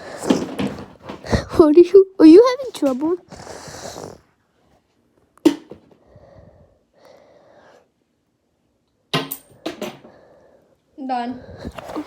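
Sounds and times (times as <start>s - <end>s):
faint breathing: 0.0s - 0.5s, 3.2s - 4.3s, 5.9s - 8.0s, 9.4s - 12.0s.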